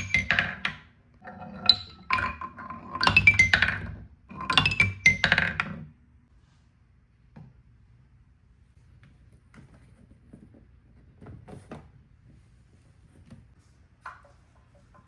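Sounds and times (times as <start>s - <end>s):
marbles clattering down plastic track: 0.0s - 5.8s.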